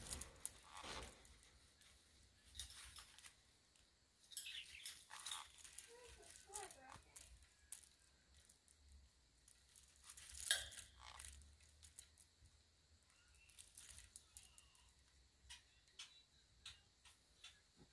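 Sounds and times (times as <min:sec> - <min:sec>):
bird toy clicks and rattles: 0:00.0 - 0:03.4, 0:04.3 - 0:12.3, 0:13.1 - 0:16.8.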